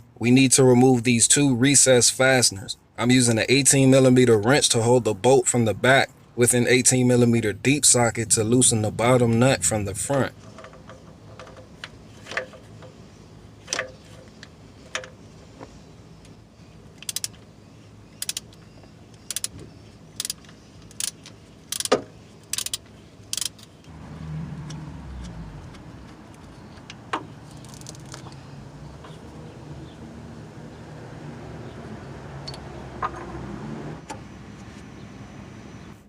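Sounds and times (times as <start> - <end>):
low rumble: 7.6 - 10.5
ratchet clicking: 17.0 - 17.4, 18.2 - 18.6, 19.2 - 19.6, 20.2 - 23.7.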